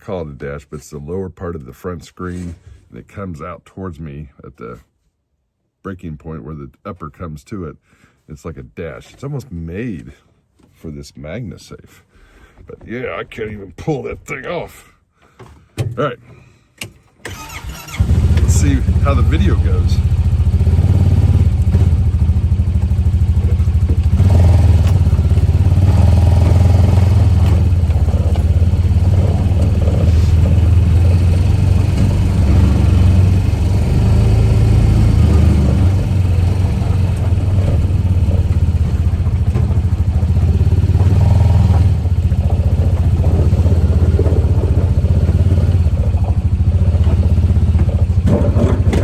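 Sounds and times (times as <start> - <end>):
single-cylinder engine running: 17.3 - 49.0.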